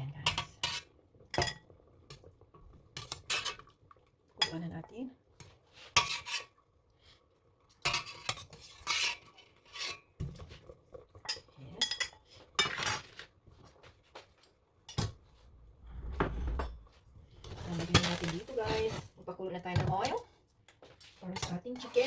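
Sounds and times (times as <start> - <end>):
metal utensil scraping a pot: 0.3 - 1.6, 3.0 - 3.7, 5.8 - 6.6, 7.9 - 10.1, 15.9 - 19.2.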